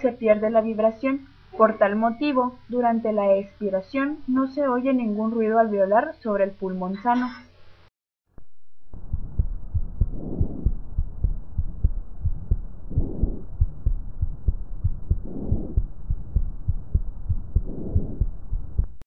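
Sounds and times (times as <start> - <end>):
heartbeat thuds: 8.9 - 19.0
breath sounds through stethoscope: 10.0 - 10.8, 12.9 - 13.5, 15.1 - 15.9, 17.6 - 18.3.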